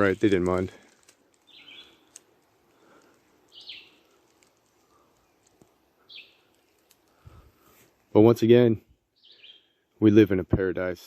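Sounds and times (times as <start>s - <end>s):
bird calling: 1.4s - 2.2s, 2.8s - 4.2s, 6.0s - 6.9s, 9.1s - 9.8s.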